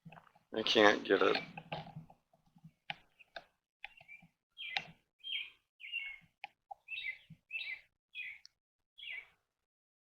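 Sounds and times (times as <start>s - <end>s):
bird chirping: 3.0s - 9.4s.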